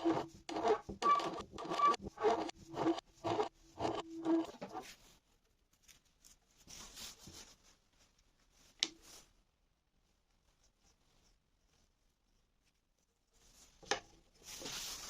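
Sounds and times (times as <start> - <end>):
scraping strokes on wood: 0.0 - 4.9.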